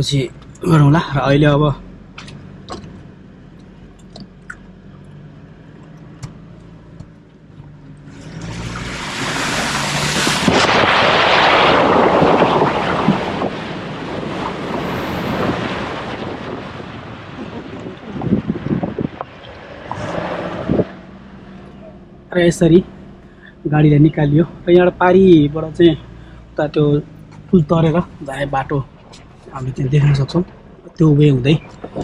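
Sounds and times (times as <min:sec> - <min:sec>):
tyres churning through water: 0:08.1 - 0:22.2
pickup truck idling: 0:21.0 - 0:29.5.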